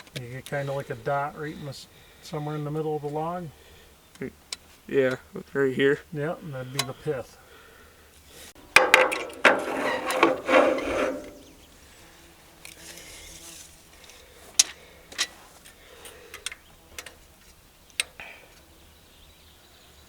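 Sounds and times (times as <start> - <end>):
rough scraping and rubbing: 8.8 - 11.6
light sharp clicks: 17.9 - 18.6.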